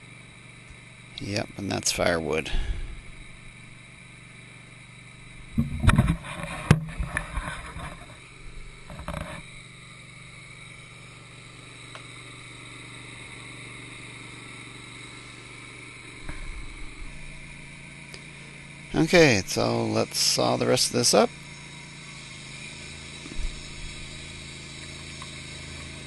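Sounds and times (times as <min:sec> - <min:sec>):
sawmill running: 0:12.7 - 0:26.0.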